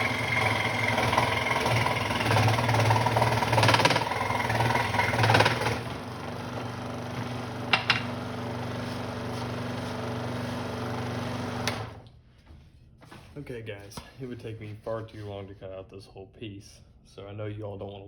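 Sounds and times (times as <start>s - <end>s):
saw blade cutting wood: 0.0s - 5.9s
scroll saw motor hum: 0.0s - 7.6s.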